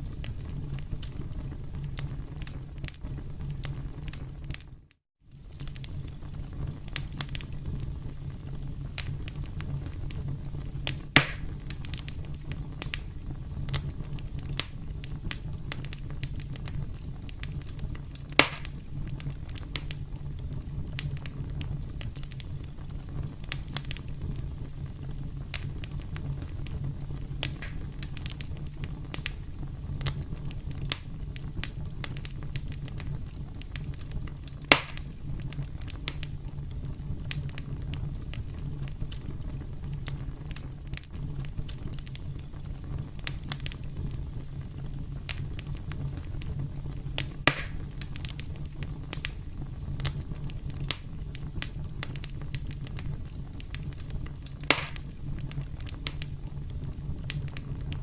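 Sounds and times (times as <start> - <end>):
campfire crackling: 0.0 - 58.0
wood pops: 11.2 - 11.5, 18.4 - 18.7, 47.5 - 47.8, 54.7 - 55.0.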